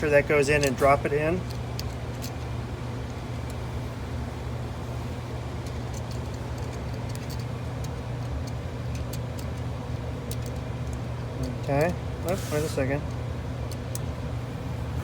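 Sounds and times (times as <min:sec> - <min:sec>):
machinery hum: 0:00.0 - 0:15.0
metal valve parts clicking: 0:00.4 - 0:03.6, 0:05.6 - 0:14.1.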